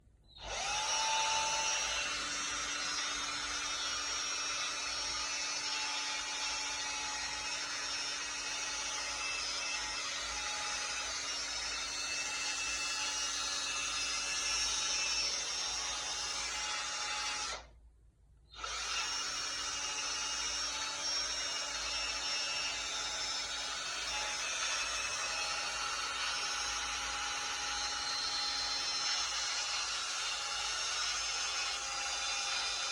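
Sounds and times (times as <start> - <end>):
electric drill whirring: 0.3 - 17.7, 18.5 - 32.9.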